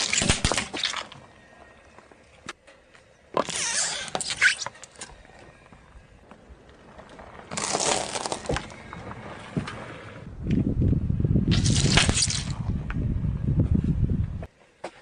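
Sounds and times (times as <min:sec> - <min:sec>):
tyre crushing brittle objects: 0:00.0 - 0:01.3, 0:07.3 - 0:09.0, 0:11.5 - 0:12.6.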